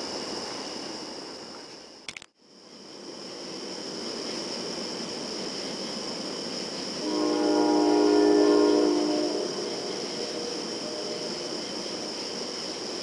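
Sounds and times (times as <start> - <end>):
locomotive air horn chord: 7.0 - 11.9.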